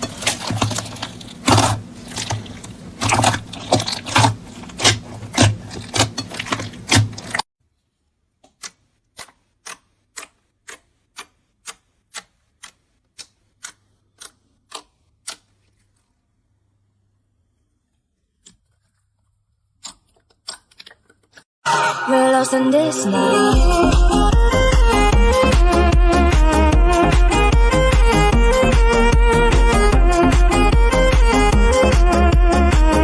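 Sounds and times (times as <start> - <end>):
crunchy slime crackling: 0.0 - 7.5.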